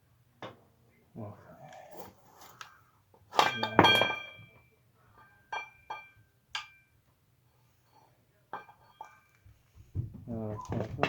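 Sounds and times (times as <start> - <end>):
metal parts and tools clinking: 3.4 - 4.6.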